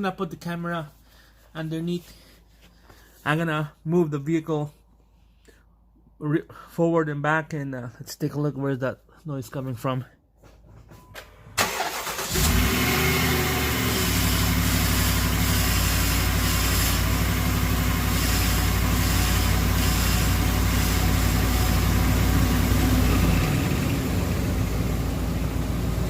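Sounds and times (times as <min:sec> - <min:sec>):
truck engine starting and running: 0:11.3 - 0:26.0.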